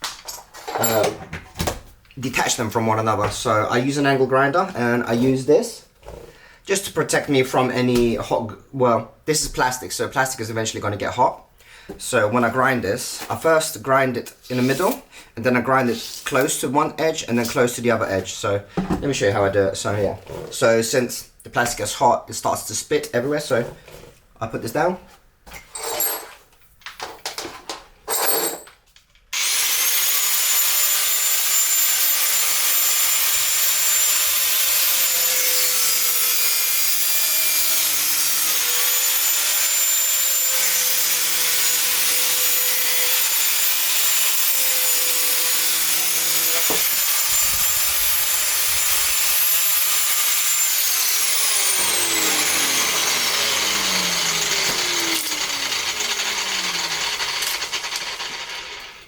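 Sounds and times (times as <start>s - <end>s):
angle grinder cutting plastic: 29.3s - 59.0s.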